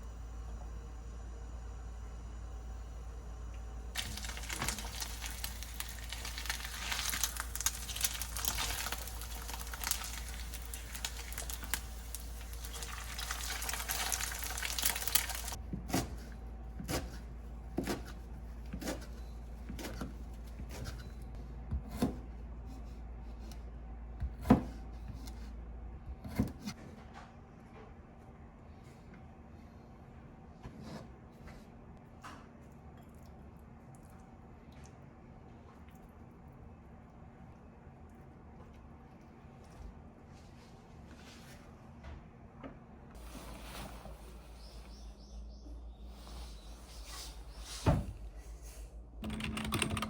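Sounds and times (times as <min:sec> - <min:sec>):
steady low hum: 0:00.0 - 0:26.3.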